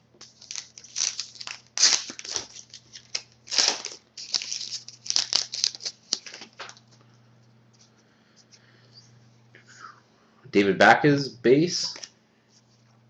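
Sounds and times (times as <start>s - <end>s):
wrapper crinkling and tearing: 0.2s - 6.8s.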